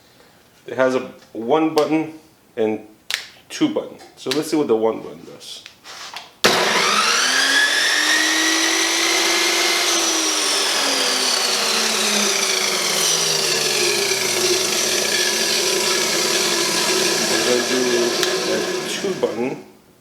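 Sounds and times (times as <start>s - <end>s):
chop saw motor whirring: 6.5s - 19.4s.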